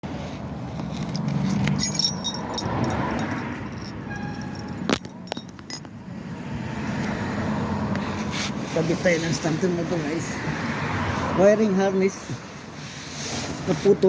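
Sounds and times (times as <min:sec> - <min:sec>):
light metallic clinking: 0:00.8 - 0:06.0.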